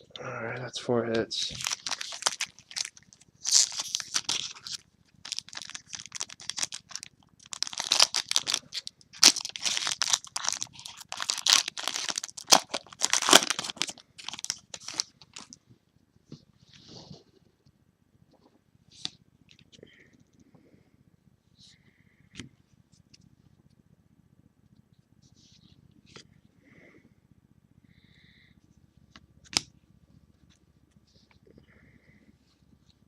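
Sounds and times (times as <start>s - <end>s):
card pack wrappers crinkling: 1.4s - 15.6s.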